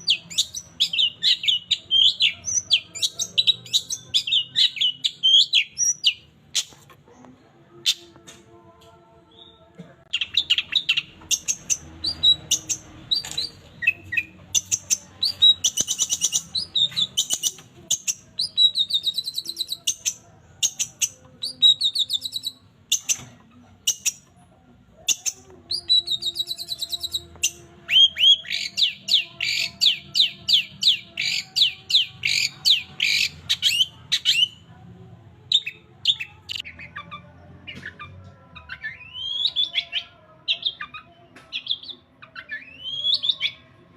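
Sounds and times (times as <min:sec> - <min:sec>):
shrike singing chirps and trills: 0:10.2 - 0:23.2, 0:25.0 - 0:34.6.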